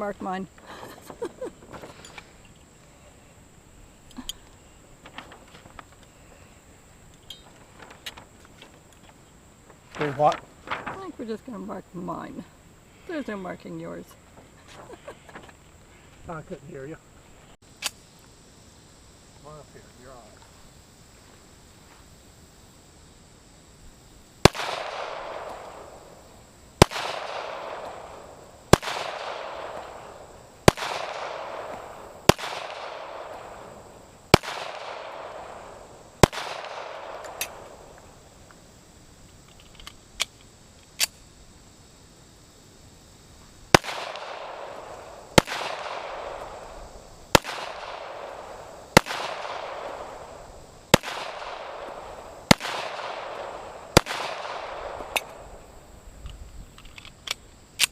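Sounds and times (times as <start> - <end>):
handgun shots with echo: 28.8 - 30.1, 30.7 - 33.5, 45.4 - 46.4, 47.4 - 50.1, 51.0 - 55.4.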